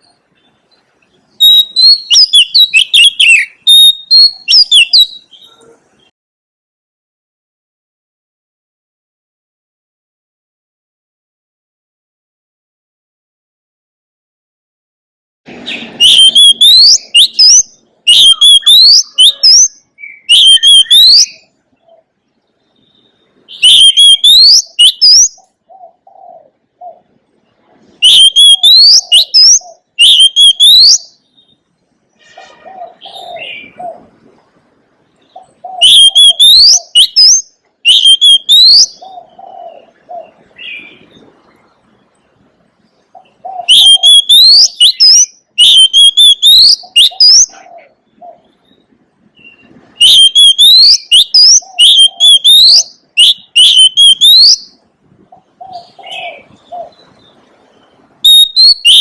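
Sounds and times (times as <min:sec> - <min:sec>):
bird singing whistled notes: 0:00.0 - 0:06.1, 0:15.6 - 0:26.0, 0:28.0 - 0:31.6, 0:35.2 - 0:41.2, 0:43.2 - 0:54.8, 0:55.6 - 0:59.0.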